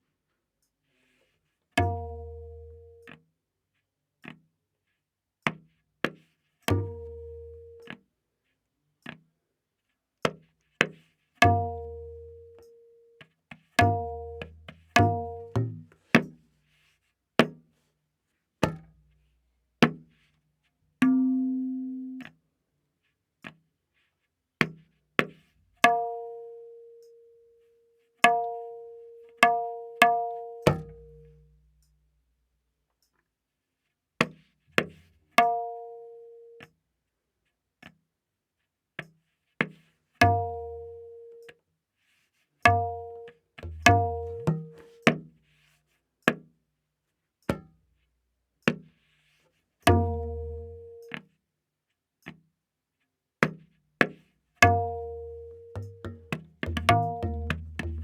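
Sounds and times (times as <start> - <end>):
tabla strokes ringing: 1.8 - 3.2, 6.7 - 8.0, 11.4 - 13.0, 13.8 - 16.4, 18.6 - 19.0, 21.0 - 22.3, 25.8 - 27.3, 28.2 - 31.9, 34.8 - 36.4, 40.2 - 41.5, 42.6 - 45.4, 49.8 - 51.3, 53.4 - 58.0.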